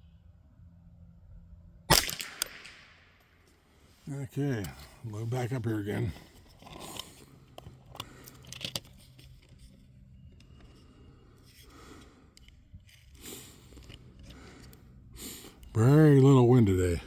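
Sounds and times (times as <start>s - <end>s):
cartridges clicking into magazine: 1.9s - 3.0s.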